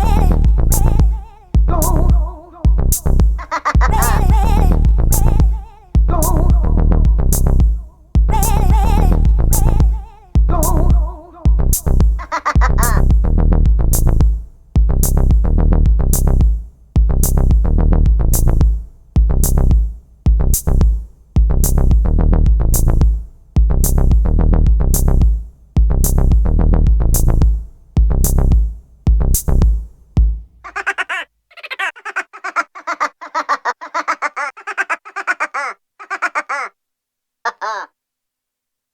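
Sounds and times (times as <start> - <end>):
heavy synthesizer bass: 0.0 - 16.5
drum machine beat: 0.0 - 31.0.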